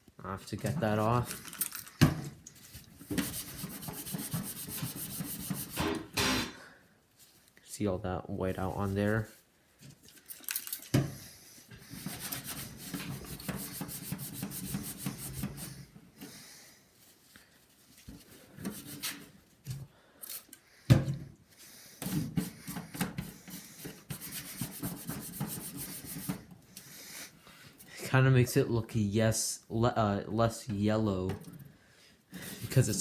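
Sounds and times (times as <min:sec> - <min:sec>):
paper towel scrubbing plastic: 0:00.4 - 0:06.0, 0:11.6 - 0:19.7, 0:21.5 - 0:28.1, 0:32.3 - 0:33.0.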